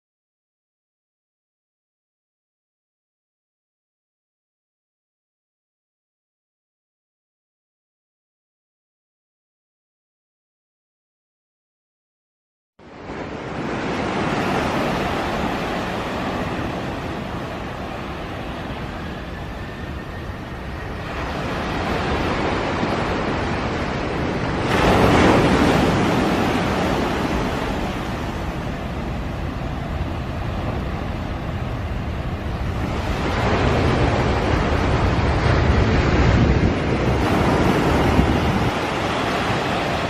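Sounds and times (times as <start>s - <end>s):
roaring rumble from the sky: 12.9s - 40.0s.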